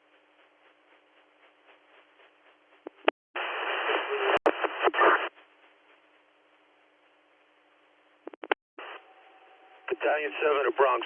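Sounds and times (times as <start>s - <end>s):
radio squelch click: 2.8s - 5.3s
radio static with high whine: 2.9s - 5.4s, 8.2s - 9.1s, 9.8s - 11.0s
faint radio hiss: 2.9s - 11.0s.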